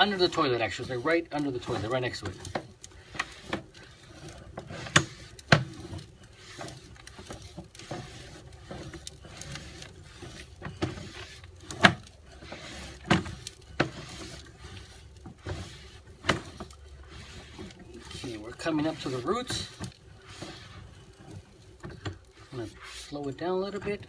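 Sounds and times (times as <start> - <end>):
low steady background noise: 0.0 - 24.0
knocks and clicks of cable reel: 1.4 - 16.8.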